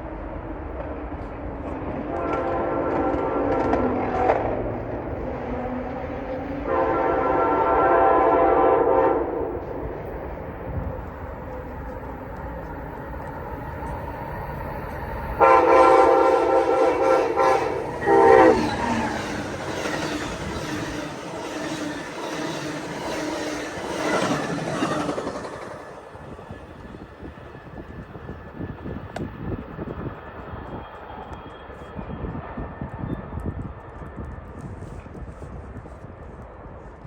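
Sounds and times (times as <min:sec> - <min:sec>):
train passing on rails: 0:00.0 - 0:37.0
train horn blasts: 0:02.0 - 0:05.0, 0:06.6 - 0:09.8, 0:15.4 - 0:21.0.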